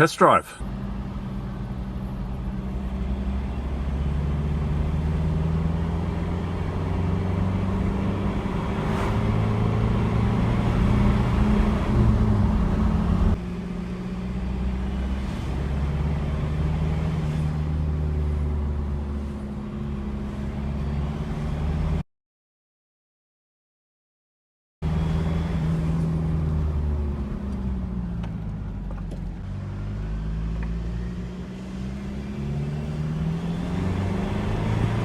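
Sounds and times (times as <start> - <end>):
diesel engine accelerating: 0.0 - 22.0, 24.8 - 35.0.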